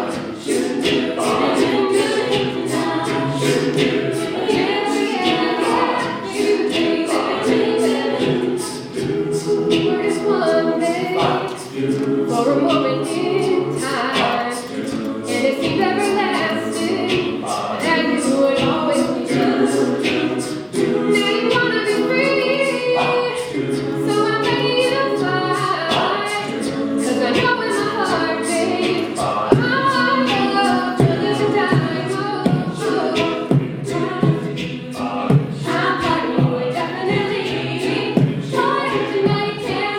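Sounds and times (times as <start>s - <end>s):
a cappella group singing in harmony: 0.0s - 39.9s.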